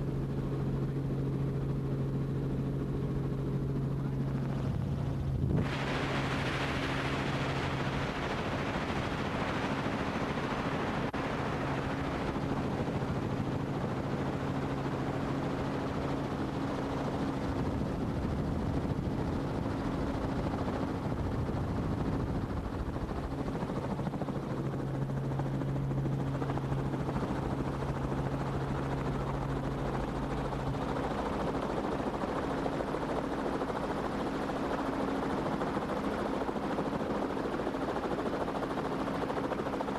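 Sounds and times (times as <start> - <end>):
helicopter engine and rotor: 0.0 - 39.9.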